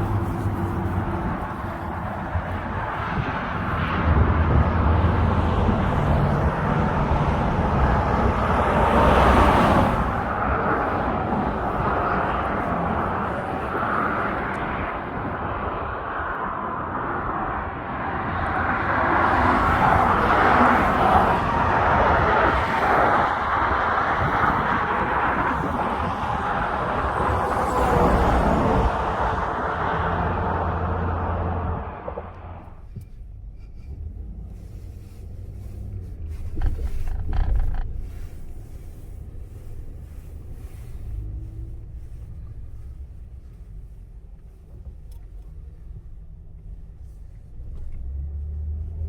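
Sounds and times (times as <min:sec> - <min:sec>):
wind buffeting microphone: 0:00.0 - 0:33.1
highway traffic rumble: 0:00.0 - 0:49.0
vehicles passing close: 0:00.0 - 0:49.0.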